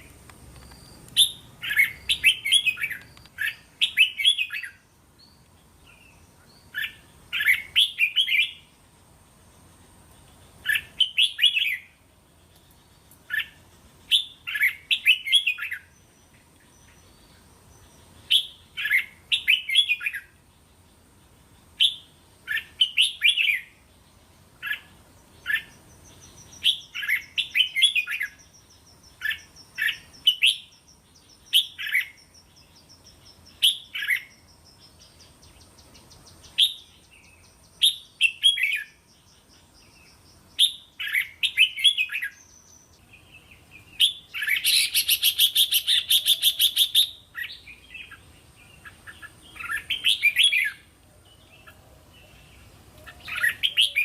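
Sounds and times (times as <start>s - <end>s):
bird singing short phrases: 0.0s - 8.7s, 21.7s - 54.0s.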